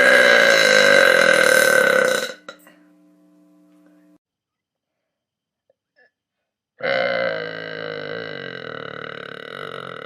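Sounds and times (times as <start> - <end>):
person burping long: 0.0 - 2.5, 6.8 - 10.0.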